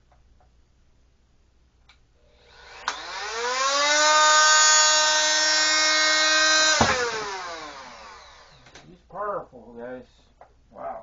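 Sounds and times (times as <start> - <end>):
sander motor whining: 2.4 - 8.8.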